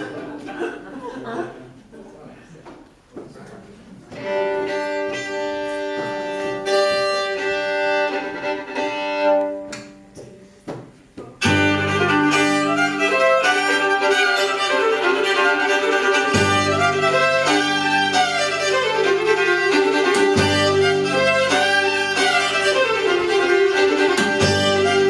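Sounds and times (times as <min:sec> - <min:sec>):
fiddle melody: 0:04.2 - 0:10.3, 0:11.4 - 0:25.0
fiddles bowing held chords: 0:11.4 - 0:25.0.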